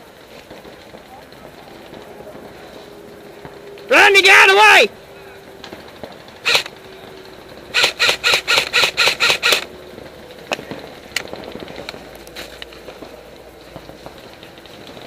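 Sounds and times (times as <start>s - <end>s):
airsoft rifle shots: 6.4s - 6.8s, 7.6s - 9.7s.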